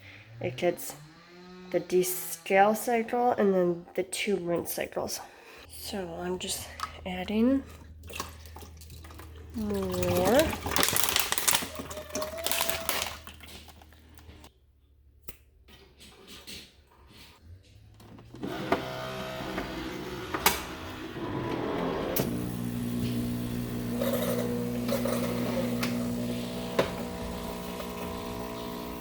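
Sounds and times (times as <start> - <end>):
espresso machine pump humming: 21.6 - 29.0.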